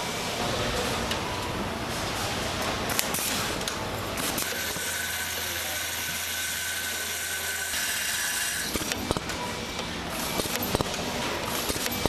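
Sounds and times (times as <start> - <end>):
machinery low hum: 0.0 - 6.3
noisy mechanical background: 0.0 - 12.0.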